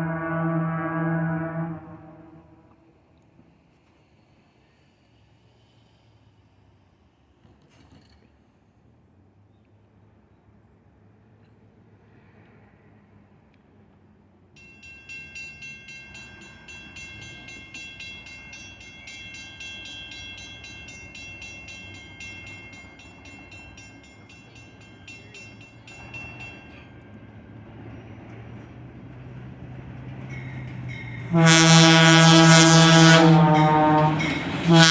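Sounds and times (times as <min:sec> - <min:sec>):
diesel locomotive rumble: 0:00.0 - 0:02.8, 0:15.1 - 0:34.9.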